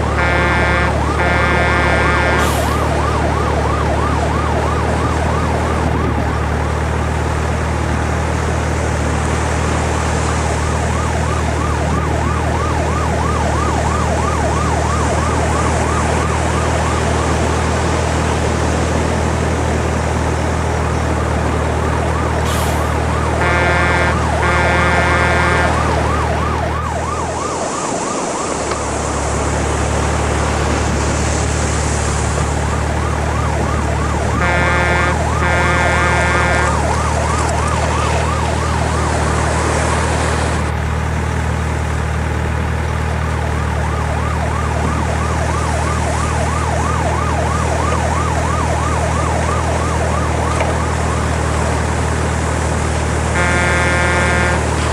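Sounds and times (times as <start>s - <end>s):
fast warbling siren: 0.0s - 7.2s, 10.2s - 18.1s, 20.9s - 30.2s, 32.4s - 40.7s, 43.6s - 51.5s, 53.3s - 54.9s
engine-like rumble: 0.0s - 54.9s
short horn honks: 0.2s - 2.8s, 23.4s - 25.8s, 34.4s - 36.8s, 53.4s - 54.9s.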